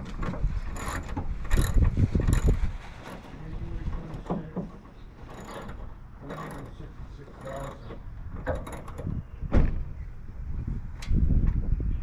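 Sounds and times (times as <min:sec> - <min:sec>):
hand tools clicking and clattering: 0:00.7 - 0:09.1.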